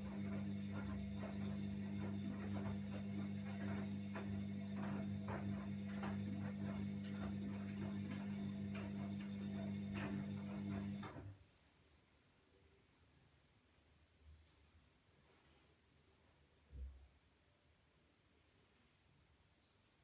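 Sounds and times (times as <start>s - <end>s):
washing machine motor hum: 0.0s - 11.4s.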